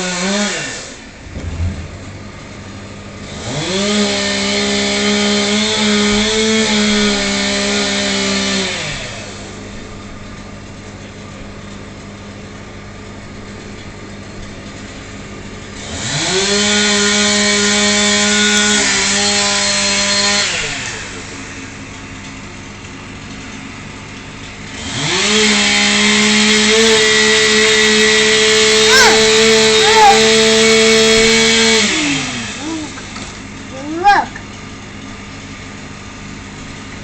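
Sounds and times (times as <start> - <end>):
chainsaw idling and revving: 0.0 - 1.4, 2.1 - 10.7, 15.1 - 22.2, 24.5 - 34.8.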